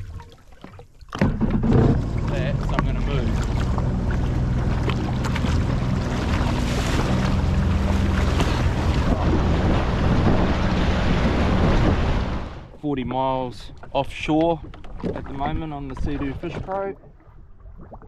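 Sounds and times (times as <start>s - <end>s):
water rushing along hull: 0.0s - 18.0s
jet ski engine running: 1.2s - 12.7s
wind noise on microphone: 7.8s - 12.6s.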